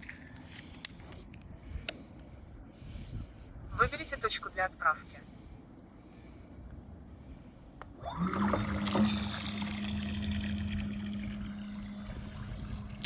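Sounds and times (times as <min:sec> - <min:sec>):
electric propeller motors humming: 0:07.3 - 0:13.0
water churned by propellers: 0:08.0 - 0:13.0.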